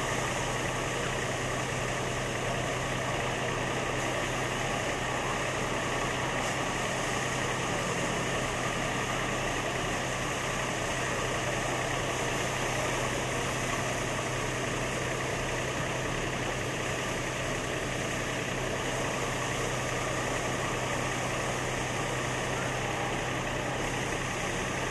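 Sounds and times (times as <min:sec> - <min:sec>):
harvesting machine engine droning: 0:00.0 - 0:24.9.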